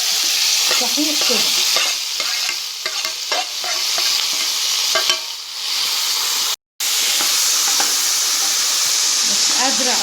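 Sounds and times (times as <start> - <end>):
meat and vegetables sizzling in oil: 0.0 - 10.0
utensil scraping against pot: 0.6 - 5.2.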